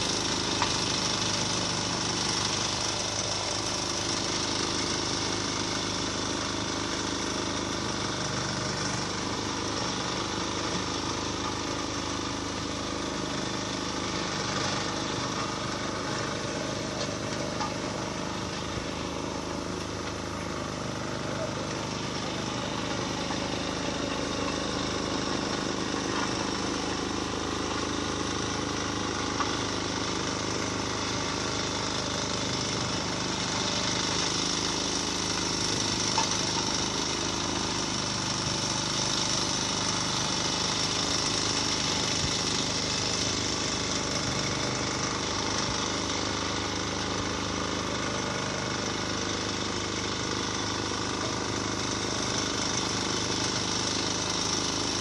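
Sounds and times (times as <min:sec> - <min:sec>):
road repair machinery clatter: 0:00.0 - 0:55.0.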